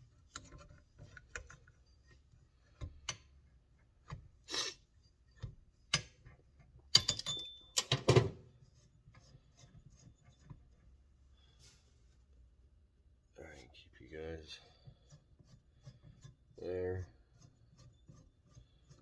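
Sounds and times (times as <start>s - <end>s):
metallic clicks and knocks: 5.4s - 8.3s
metal tools clanking: 7.0s - 8.2s.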